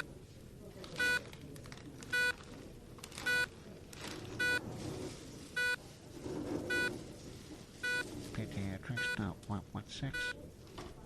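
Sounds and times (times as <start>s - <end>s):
faint background murmur: 0.0s - 11.0s
patient monitor beeping: 1.0s - 1.3s, 2.1s - 2.4s, 3.2s - 3.6s, 4.4s - 4.7s, 5.6s - 5.8s, 6.7s - 7.0s, 7.8s - 9.5s, 10.1s - 10.5s.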